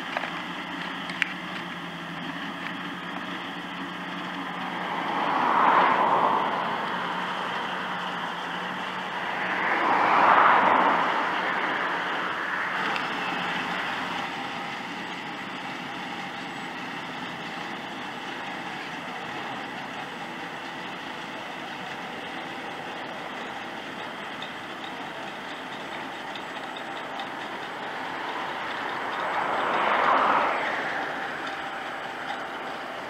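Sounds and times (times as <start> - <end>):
tractor and harvester running: 0.0 - 33.0.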